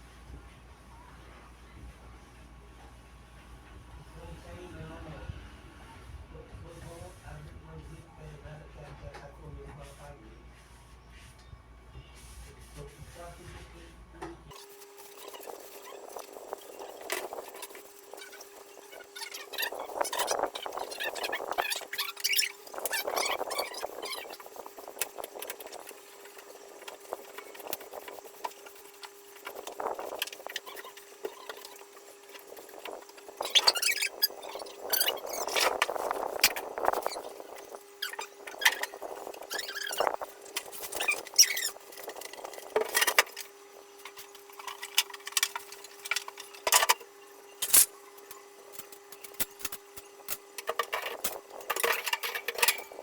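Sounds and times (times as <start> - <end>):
squeaky wiping and scrubbing: 14.5 - 43.4.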